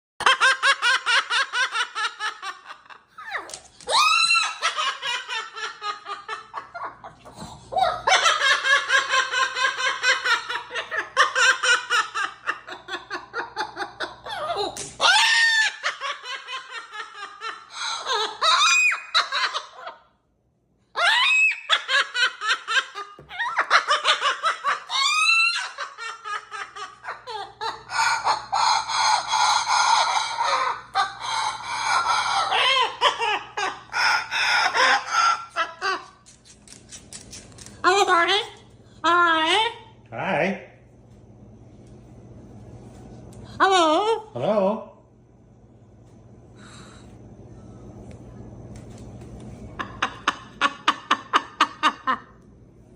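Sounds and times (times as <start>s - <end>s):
parrot mimicking laughter: 0.2s - 20.0s, 21.0s - 36.4s.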